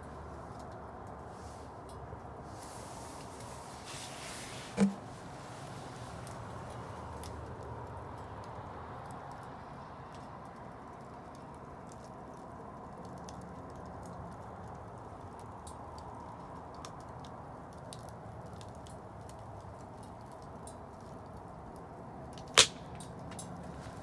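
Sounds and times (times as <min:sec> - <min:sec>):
bonfire burning with crackles: 0:00.0 - 0:24.0
loud sharp wood pop: 0:04.8 - 0:05.0, 0:22.6 - 0:23.4.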